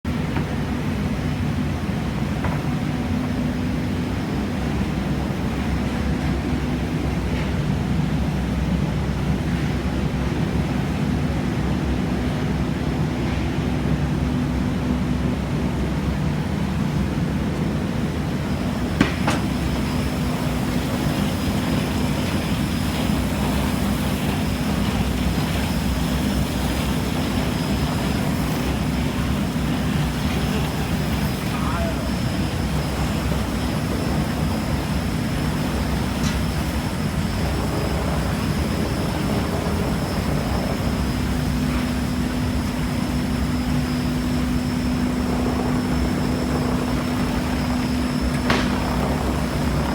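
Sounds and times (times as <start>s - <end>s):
thin high whine: 17.9s - 49.9s.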